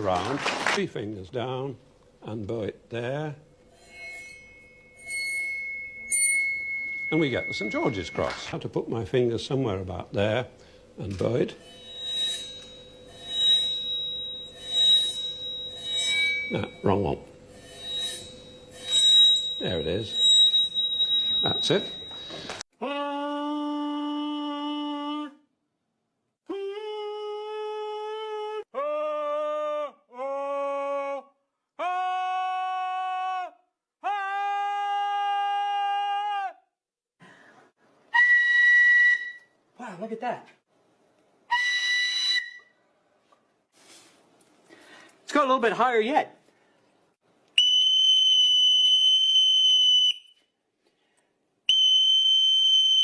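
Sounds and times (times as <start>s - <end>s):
bowed metal plate ringing: 3.6s - 8.6s, 11.2s - 22.5s.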